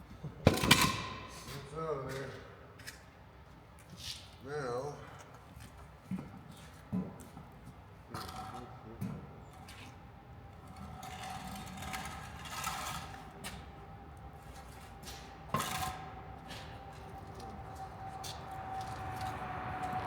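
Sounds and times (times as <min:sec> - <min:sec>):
faint steady whine: 0:11.7 - 0:20.0.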